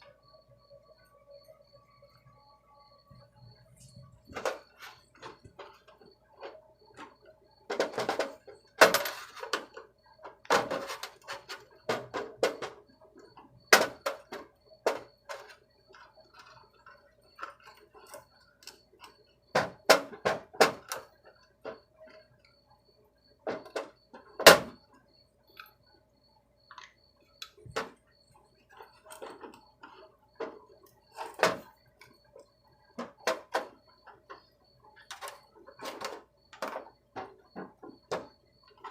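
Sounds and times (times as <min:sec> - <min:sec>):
faint steady hum: 0:00.0 - 0:38.9
metallic clinks on sheet metal: 0:04.3 - 0:12.6.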